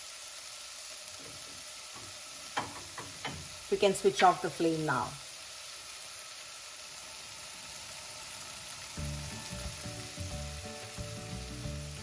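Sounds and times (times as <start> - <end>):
food sizzling in oil: 0.0 - 12.0
background music: 9.0 - 12.0.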